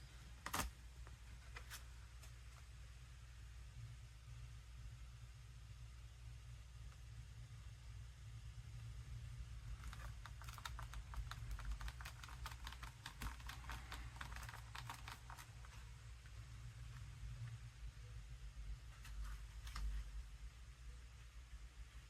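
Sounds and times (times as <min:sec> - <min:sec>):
steady low hum: 0:00.0 - 0:22.0
typing on small keyboard: 0:09.8 - 0:15.7.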